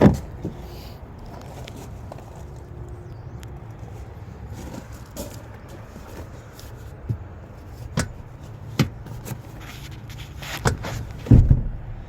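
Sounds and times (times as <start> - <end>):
steady low rumble: 0.2 - 12.0
sharp clicks and knocks: 7.0 - 11.8.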